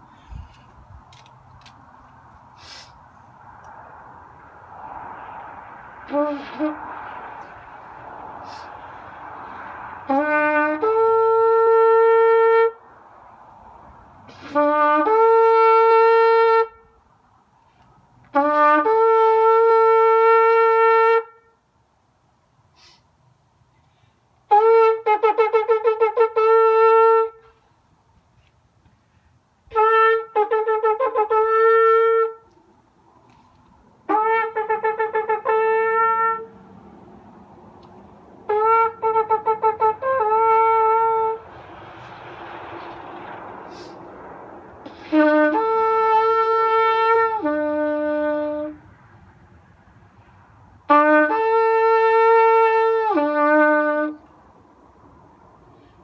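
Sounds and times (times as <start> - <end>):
shofar blasts: 5.8 - 12.9, 14.3 - 17.0, 18.3 - 21.6, 24.5 - 27.5, 29.7 - 32.5, 34.1 - 36.5, 38.5 - 44.0, 44.8 - 48.8, 50.9 - 54.3.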